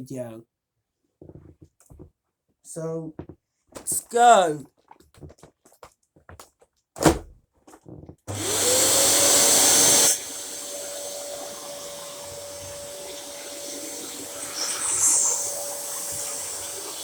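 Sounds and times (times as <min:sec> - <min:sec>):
vacuum cleaner motor whine: 0:08.3 - 0:17.0.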